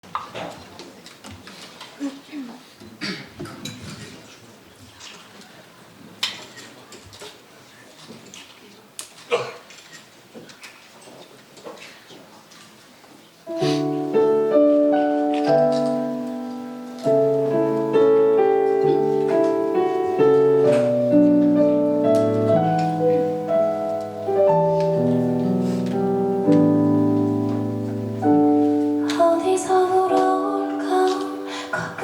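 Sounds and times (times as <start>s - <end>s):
piano playing slow chords: 13.5s - 32.0s.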